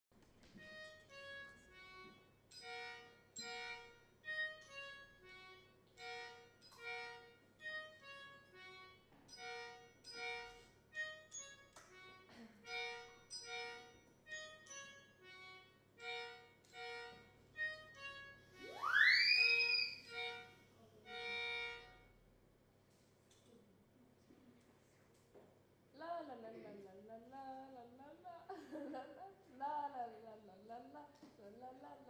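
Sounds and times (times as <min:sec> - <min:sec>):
tune of short pitched notes: 0:18.6 - 0:20.5.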